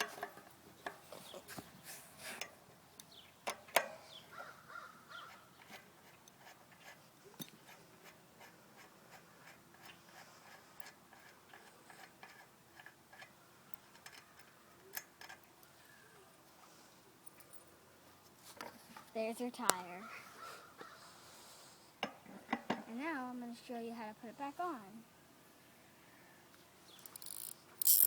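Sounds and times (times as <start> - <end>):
wrench clicking: 27.0 - 28.0.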